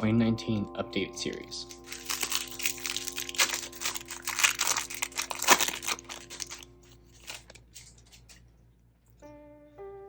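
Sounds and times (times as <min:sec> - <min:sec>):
foil wrapper tearing and crinkling: 0:01.6 - 0:08.4.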